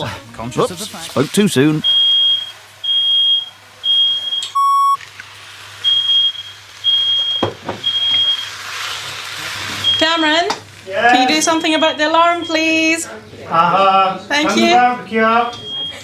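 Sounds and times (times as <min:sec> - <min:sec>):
smoke alarm beeping: 0:01.8 - 0:05.0, 0:05.8 - 0:08.6, 0:09.8 - 0:10.5, 0:11.1 - 0:13.0, 0:14.6 - 0:16.0
knock: 0:07.4 - 0:07.8.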